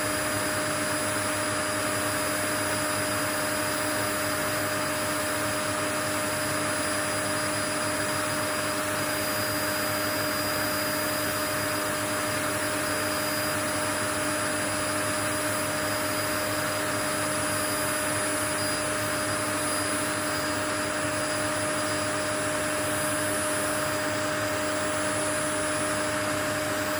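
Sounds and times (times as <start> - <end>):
thin high whine: 16.4 - 26.9.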